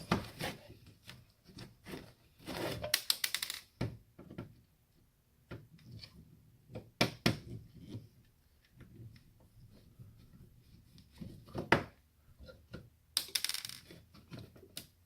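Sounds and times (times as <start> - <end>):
tools and parts clicking: 2.8 - 3.7, 13.2 - 14.0.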